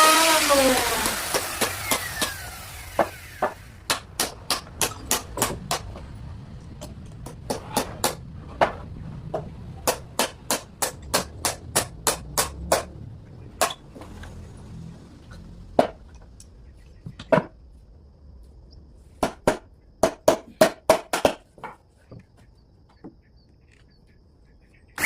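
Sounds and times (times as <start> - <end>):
hammering on wood: 0.7 - 6.0, 7.2 - 8.8, 9.4 - 12.9, 19.2 - 21.8.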